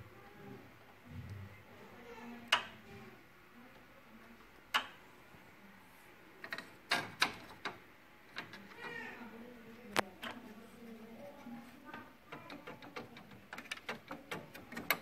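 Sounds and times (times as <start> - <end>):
plastic and metal parts clicking: 6.4 - 9.0, 11.9 - 15.0.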